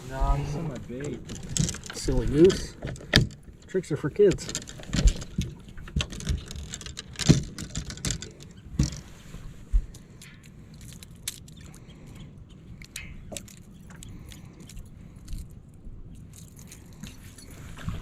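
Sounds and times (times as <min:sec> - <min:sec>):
low steady background noise: 0:00.0 - 0:18.0
gear knocking and clattering: 0:00.8 - 0:09.1.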